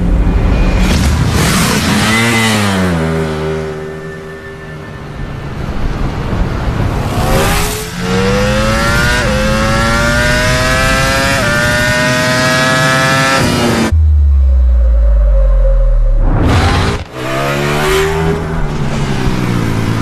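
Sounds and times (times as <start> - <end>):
motorcycle engine accelerating: 7.1 - 15.6
deep low rumble: 13.9 - 17.1.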